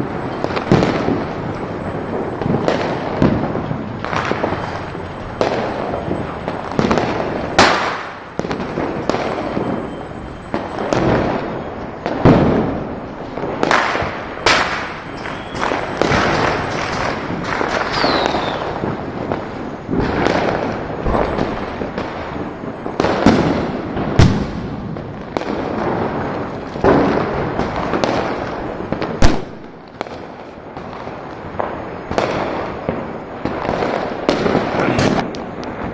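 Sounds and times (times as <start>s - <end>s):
falling firework whistle: 0.0s - 24.6s
firecrackers banging and crackling: 0.0s - 35.9s
loud firecracker blasts: 0.0s - 35.9s.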